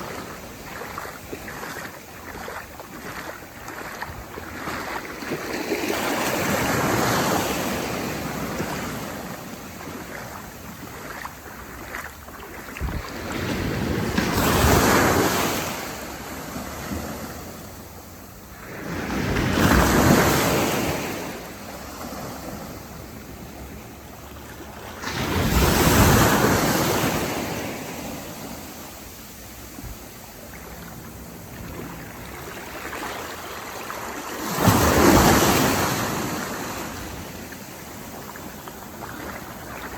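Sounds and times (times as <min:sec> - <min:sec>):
wind on microphone: 0:00.0 - 0:16.1
sea waves breaking: 0:00.0 - 0:39.9.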